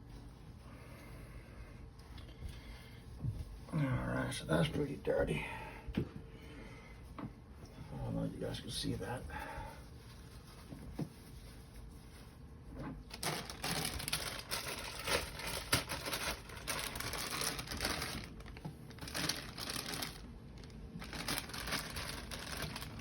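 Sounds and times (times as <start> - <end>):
filter crinkling and rustling: 9.8 - 23.0.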